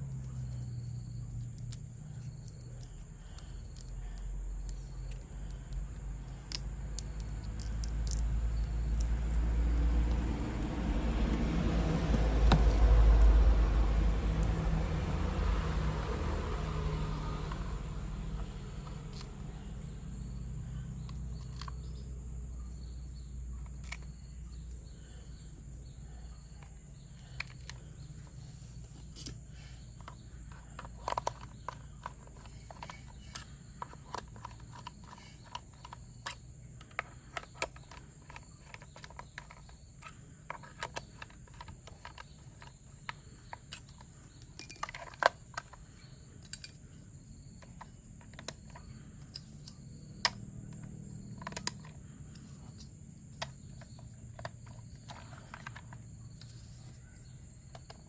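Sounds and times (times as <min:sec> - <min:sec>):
plastic toy parts clicking: 0:01.4 - 0:03.9, 0:04.6 - 0:09.4, 0:21.0 - 0:21.8, 0:23.7 - 0:24.2, 0:30.0 - 0:45.8, 0:47.6 - 0:56.5.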